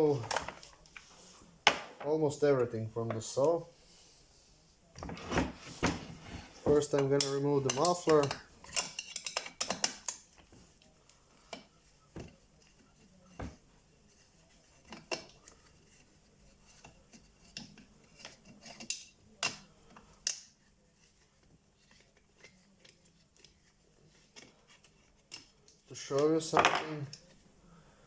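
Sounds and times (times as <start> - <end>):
hand tools clicking on metal: 6.8 - 10.3.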